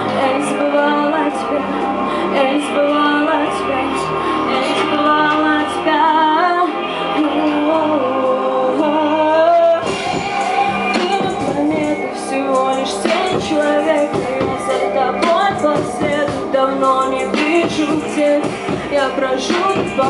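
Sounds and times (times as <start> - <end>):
live pop band accompaniment: 0.0 - 20.0
woman singing: 0.0 - 20.0.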